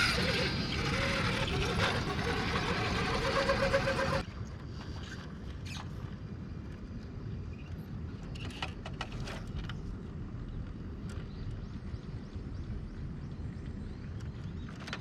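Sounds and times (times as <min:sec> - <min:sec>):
electric motor whine: 0:00.0 - 0:04.2
outdoor noise: 0:00.0 - 0:15.0.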